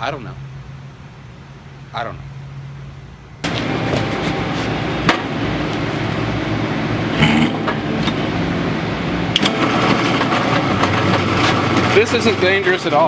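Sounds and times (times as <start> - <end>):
drill press drilling steel: 9.4 - 13.0.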